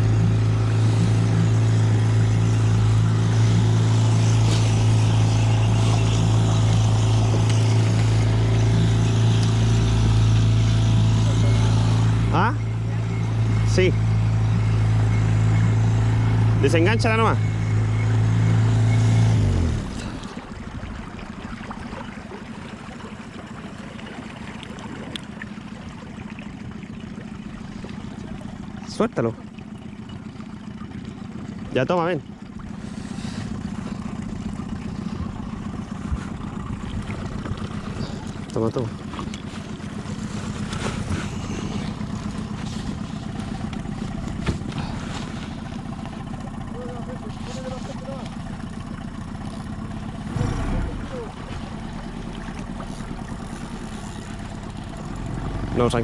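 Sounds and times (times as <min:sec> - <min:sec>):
engine idling and winding down: 0:00.0 - 0:56.0
outboard motor running: 0:00.0 - 0:56.0
water gurgling and lapping: 0:00.0 - 0:56.0.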